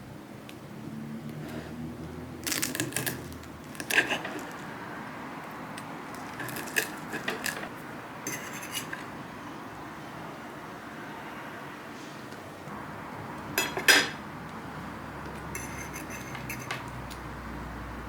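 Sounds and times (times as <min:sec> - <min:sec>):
dishes and utensils clinking: 0:08.3 - 0:09.1, 0:13.6 - 0:14.2, 0:15.5 - 0:17.0.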